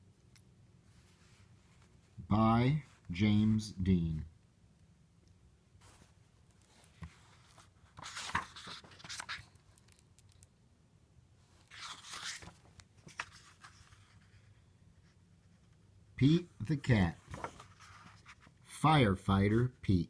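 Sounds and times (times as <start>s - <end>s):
book pages rustling: 5.8s - 10.0s, 11.5s - 14.6s, 16.7s - 18.6s.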